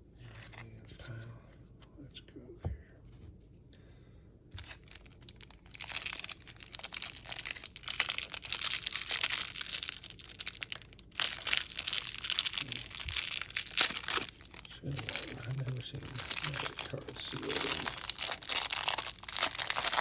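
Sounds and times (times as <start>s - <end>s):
cellophane wrapper crinkling and tearing: 4.6s - 20.0s.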